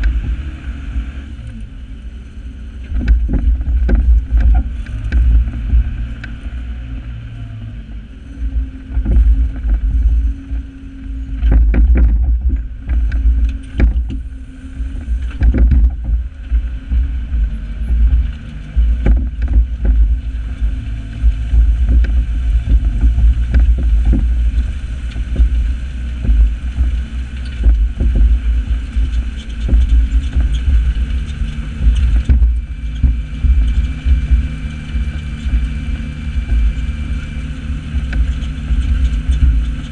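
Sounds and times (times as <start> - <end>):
tractor diesel engine under load: 0.0 - 39.9
knocks and rattles: 2.9 - 5.9, 11.4 - 39.9.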